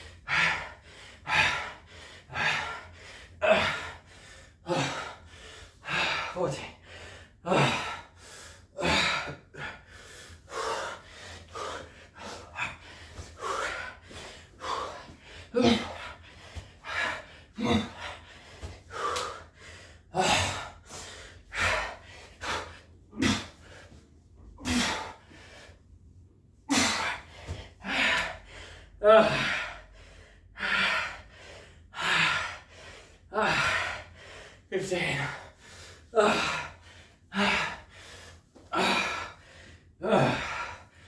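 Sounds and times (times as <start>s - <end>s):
man breathing heavily: 0.0s - 41.0s
man grunting: 5.9s - 6.8s, 15.5s - 16.1s, 16.9s - 18.1s, 20.2s - 20.7s, 23.2s - 23.6s, 24.6s - 25.2s, 26.7s - 28.3s, 29.0s - 29.7s, 34.8s - 35.4s, 36.2s - 36.8s, 40.0s - 40.7s.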